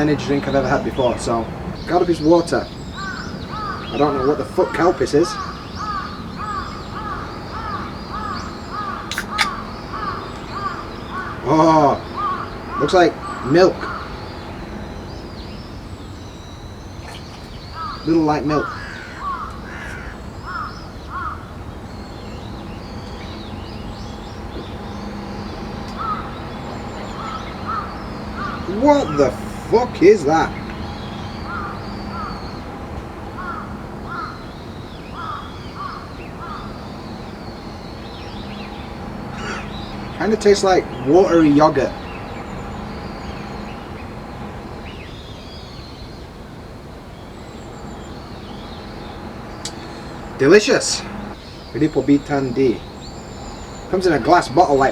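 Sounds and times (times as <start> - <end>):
crows cawing: 0.0 - 46.6, 47.4 - 54.9
high thin bird trill: 0.0 - 54.9
small birds chirping: 0.0 - 54.9
steady low hum: 0.0 - 54.9.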